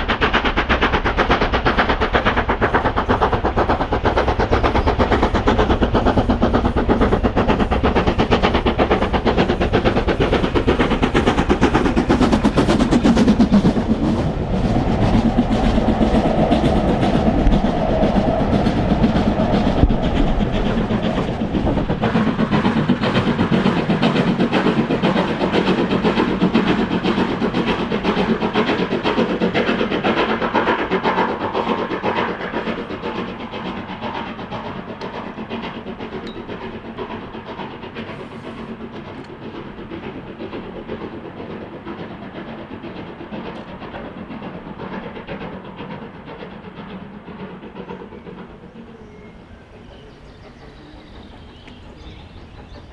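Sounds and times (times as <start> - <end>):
steam locomotive exhaust beats: 0.0 - 52.9.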